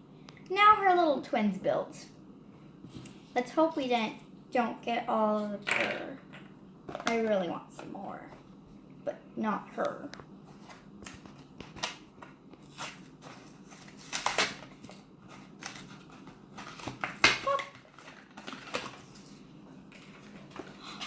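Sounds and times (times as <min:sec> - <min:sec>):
plastic packaging crinkling: 0:11.0 - 0:21.0.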